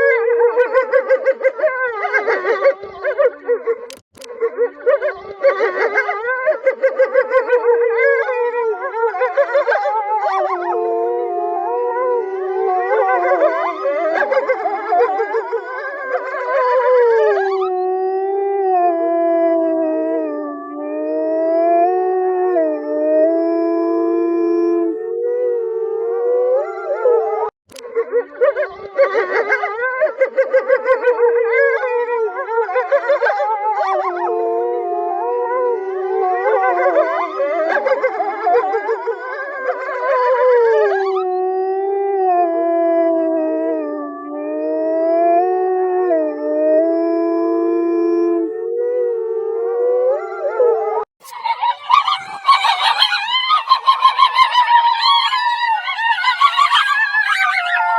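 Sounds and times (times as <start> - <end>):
wolves howling: 0.0 - 57.9
wolves yipping: 51.2 - 57.9.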